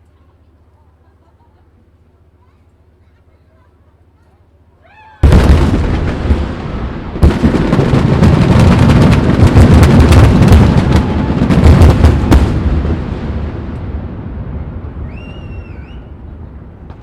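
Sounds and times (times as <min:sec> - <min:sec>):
rapid sharp cracks: 0:05.2 - 0:12.7
fireworks bursting: 0:05.2 - 0:17.0
heavy firework boom: 0:05.2 - 0:17.0.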